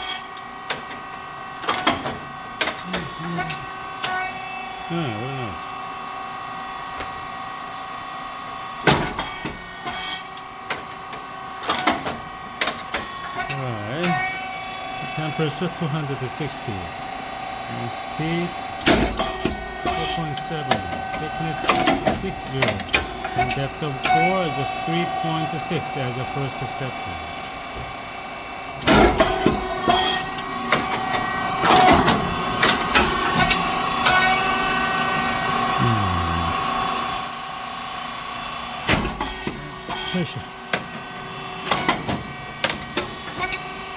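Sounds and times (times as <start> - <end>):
machine humming: 2.6 - 4.0, 13.4 - 37.3
mechanical clacks and knocks: 28.8 - 30.2.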